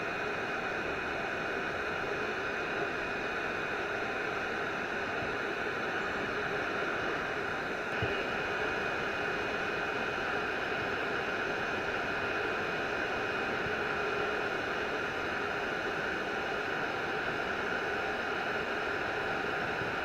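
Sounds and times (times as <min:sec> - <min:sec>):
electric fans whirring: 0:00.0 - 0:20.0.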